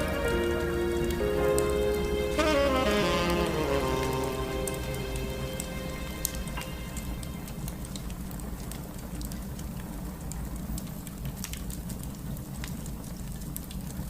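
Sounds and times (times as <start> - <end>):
low rumble: 0.0 - 9.3
rain falling on a surface: 0.0 - 14.0.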